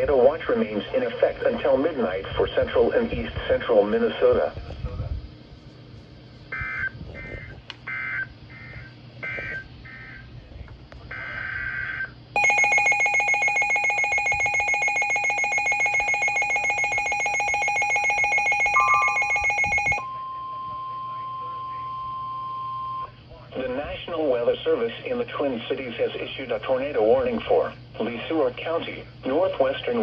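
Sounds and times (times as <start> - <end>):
shrill digital data bursts: 12.4 - 20.0
two-tone attention signal: 12.4 - 23.1.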